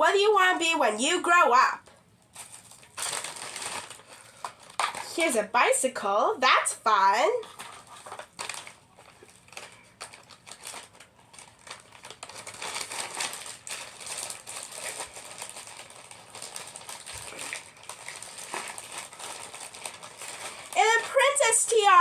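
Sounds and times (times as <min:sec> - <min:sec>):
packaging rustle: 0:02.3 - 0:05.2, 0:07.4 - 0:22.0.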